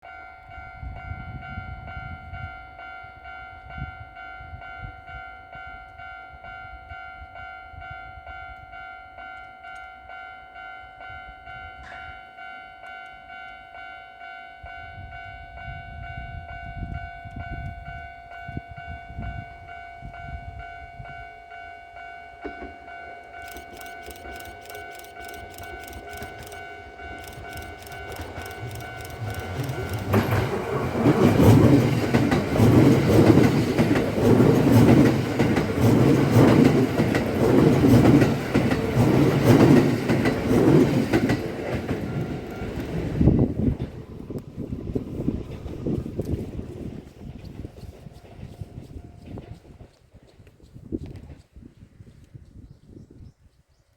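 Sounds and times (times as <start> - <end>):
train clattering: 22.4 - 50.6.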